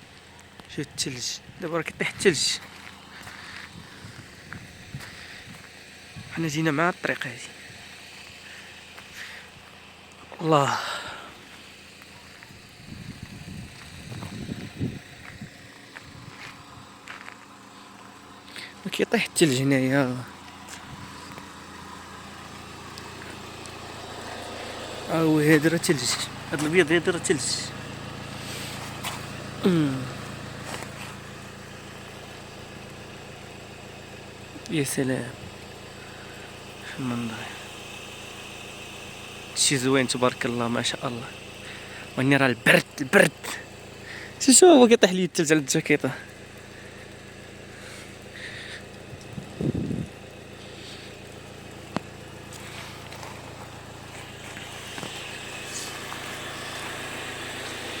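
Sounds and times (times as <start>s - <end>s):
vehicle engine idling hum: 0.0s - 58.0s
low mechanical hum: 7.4s - 18.9s, 46.2s - 58.0s.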